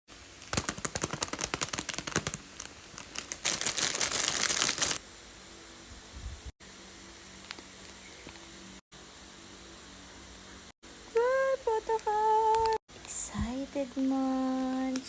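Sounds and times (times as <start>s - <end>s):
packaging crinkling: 0.1s - 5.0s
packaging ripping: 0.4s - 5.0s.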